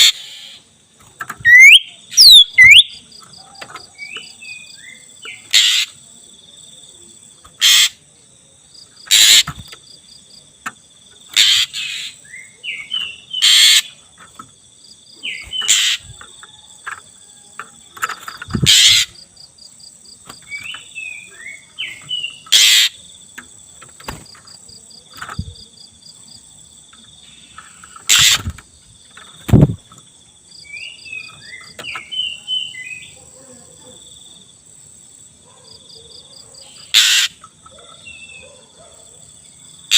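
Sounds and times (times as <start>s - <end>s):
crickets chirring: 0.0s - 39.9s
magpie-robin singing: 1.4s - 3.0s, 11.4s - 14.0s, 15.2s - 16.2s.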